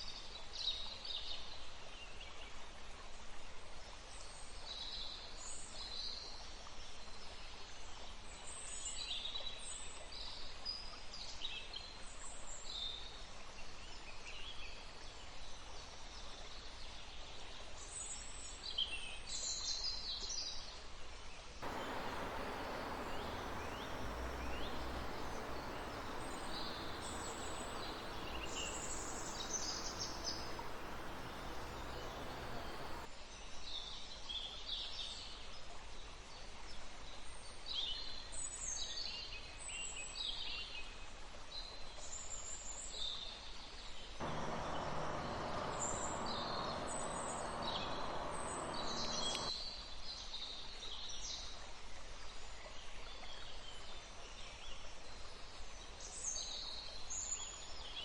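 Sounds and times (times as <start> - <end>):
birds chirping and trilling: 21.6 - 33.1, 44.2 - 49.5
river water flowing: 21.6 - 33.1, 44.2 - 49.5.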